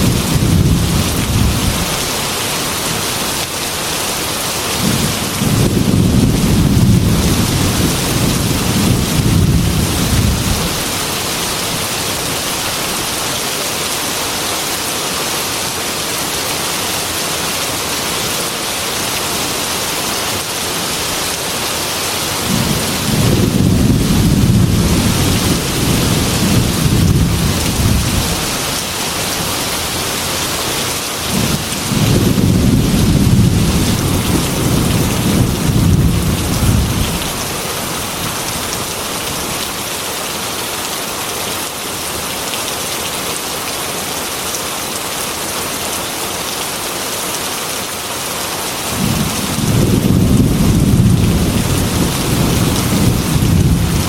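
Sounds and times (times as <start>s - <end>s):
thunder rumbling: 0.0s - 2.0s, 4.8s - 11.8s, 22.4s - 30.2s, 31.2s - 38.8s, 48.9s - 54.0s
heavy rain on a window: 0.0s - 54.0s.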